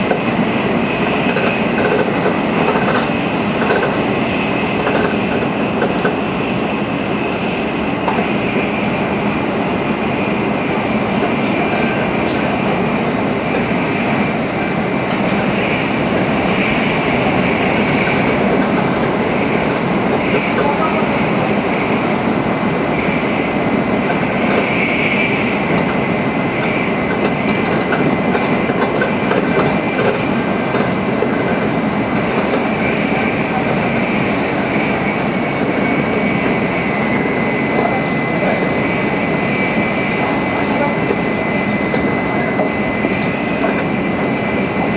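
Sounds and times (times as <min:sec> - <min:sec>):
train rushing and rolling: 0:00.0 - 0:44.9
high-pitched whine: 0:02.6 - 0:25.0.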